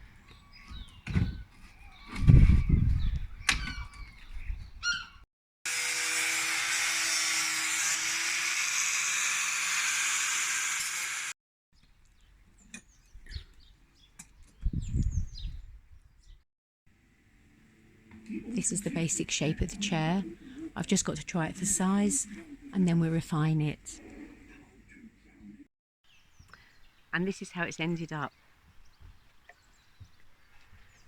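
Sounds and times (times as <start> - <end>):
birds chirping: 0.0 - 5.2, 11.8 - 16.4, 18.0 - 31.0
electric power tool running: 5.7 - 11.4.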